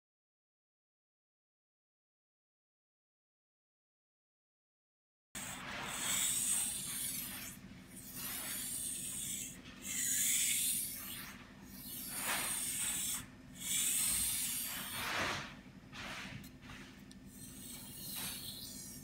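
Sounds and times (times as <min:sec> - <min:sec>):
knife blade on whetstone: 0:05.4 - 0:15.2, 0:17.3 - 0:19.0.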